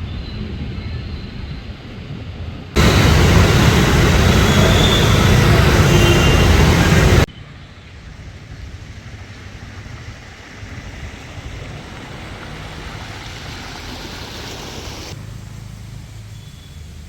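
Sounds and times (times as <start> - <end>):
heavy rain falling: 2.8 - 7.3.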